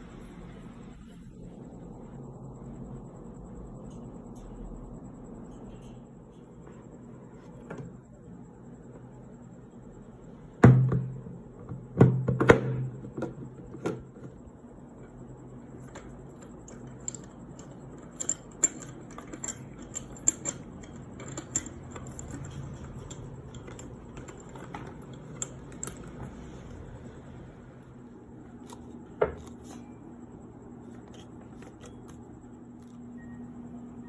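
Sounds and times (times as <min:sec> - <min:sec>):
loud knocks on metal fan parts: 0:10.6 - 0:13.4.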